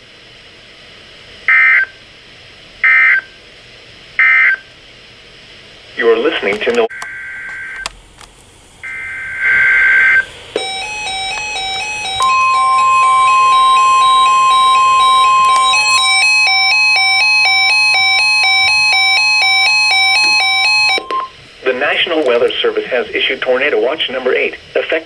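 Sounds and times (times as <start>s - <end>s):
steady warning alarm tone: 6.0s - 25.0s
electronic alert beeps: 8.8s - 21.4s.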